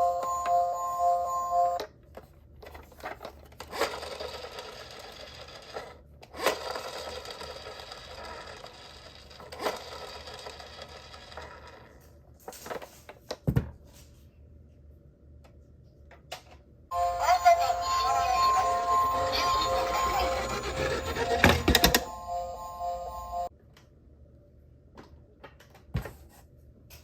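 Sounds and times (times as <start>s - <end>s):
toy car wheels whirring: 3.6s - 12.1s, 17.0s - 23.5s.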